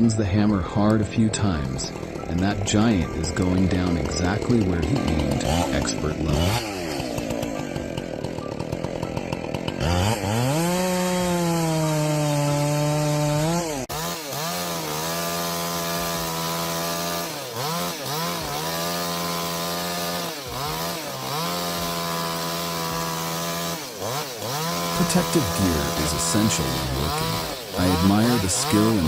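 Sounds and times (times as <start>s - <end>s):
chainsaw revving: 0.0s - 29.0s.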